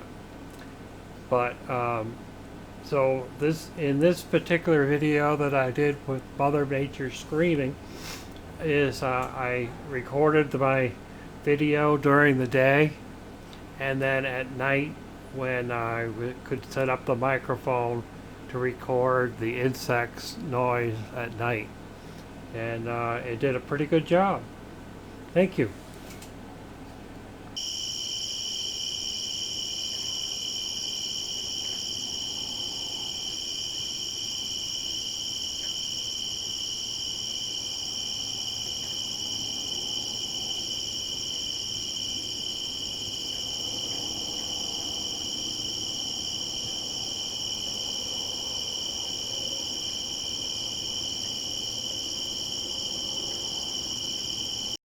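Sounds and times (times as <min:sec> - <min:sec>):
night insects trilling: 0:27.6 - 0:54.8.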